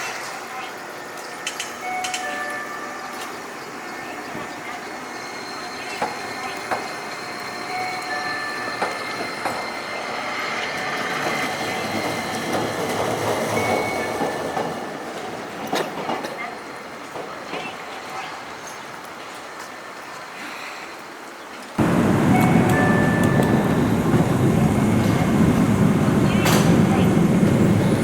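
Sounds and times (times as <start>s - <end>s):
tram noise: 1.0s - 20.0s, 21.8s - 28.0s
thin ringing tones: 1.8s - 10.0s, 21.8s - 27.8s
street traffic: 21.8s - 28.0s
wheels clicking over rail joints: 21.8s - 28.0s.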